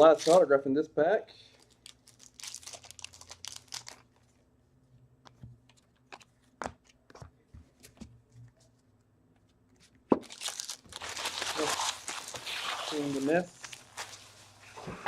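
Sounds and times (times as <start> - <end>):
foil wrapper crinkling: 0.0 - 0.4, 1.5 - 4.4, 10.2 - 14.6.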